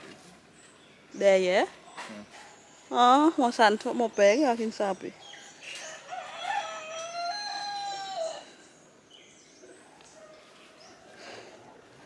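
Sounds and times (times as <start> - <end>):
rooster crowing: 5.8 - 8.6.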